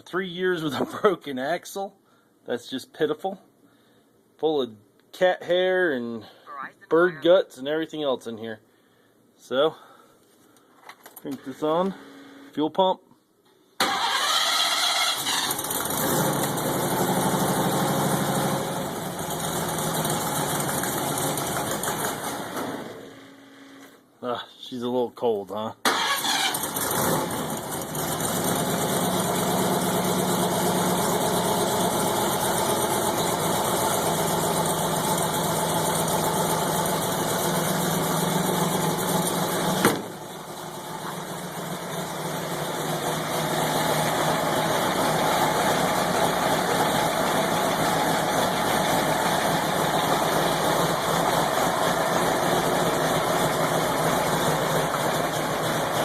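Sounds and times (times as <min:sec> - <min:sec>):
car engine idling: 0:15.2 - 0:22.4, 0:26.7 - 0:56.0.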